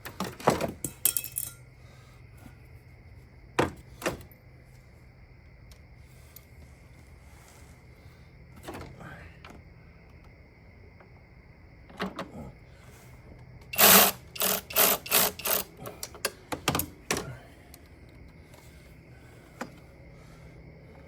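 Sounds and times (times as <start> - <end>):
power tool running bolts: 13.7 - 15.8.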